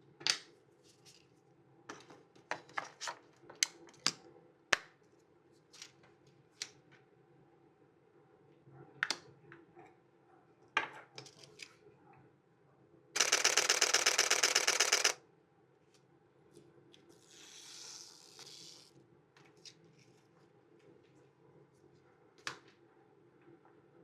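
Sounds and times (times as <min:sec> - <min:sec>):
soft rustle: 0:00.7 - 0:01.5, 0:17.9 - 0:22.1
camera shutter burst: 0:13.2 - 0:15.2.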